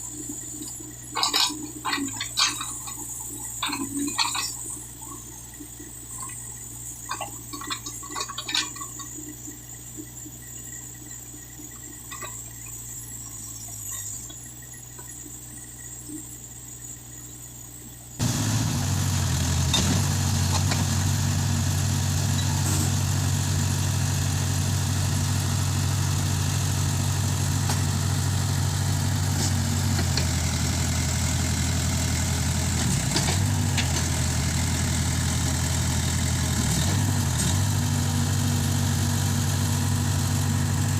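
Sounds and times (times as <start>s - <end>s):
diesel engine idling: 18.2s - 40.9s.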